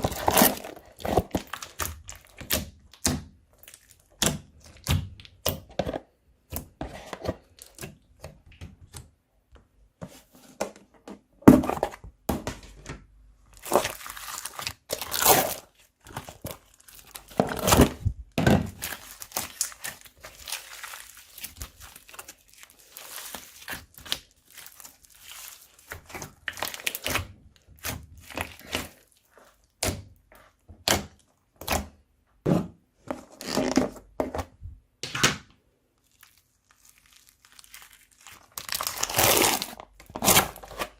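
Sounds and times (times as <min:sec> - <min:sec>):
hands kneading crunchy slime: 0:00.0 - 0:05.7, 0:13.5 - 0:32.0, 0:36.0 - 0:40.9.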